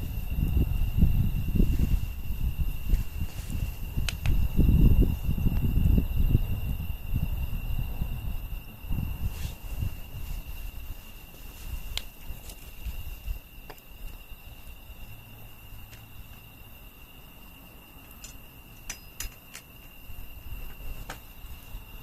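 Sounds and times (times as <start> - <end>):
campfire crackling and popping: 11.9 - 13.0.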